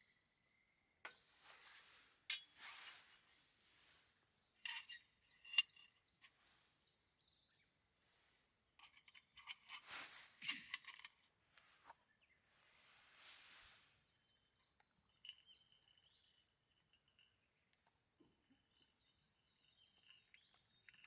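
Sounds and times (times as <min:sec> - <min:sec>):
cookware and utensils clinking: 0:01.4 - 0:03.2, 0:04.6 - 0:06.4.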